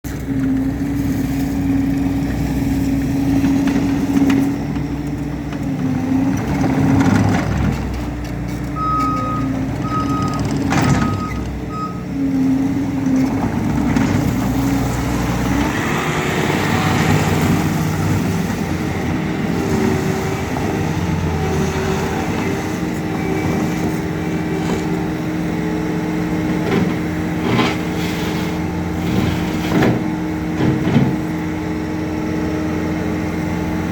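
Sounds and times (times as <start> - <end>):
diesel engine running: 0.0 - 33.9
backup alarm beeps: 8.8 - 12.1.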